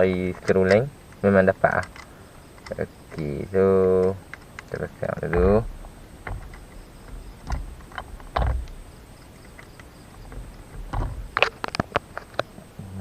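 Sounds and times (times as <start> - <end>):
screws and metal parts clicking: 4.0 - 12.4.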